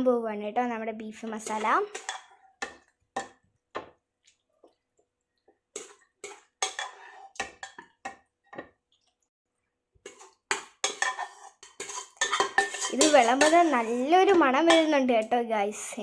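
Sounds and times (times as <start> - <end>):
spoon scraping a cooking pot: 1.4 - 3.9, 5.7 - 8.8, 10.0 - 15.0.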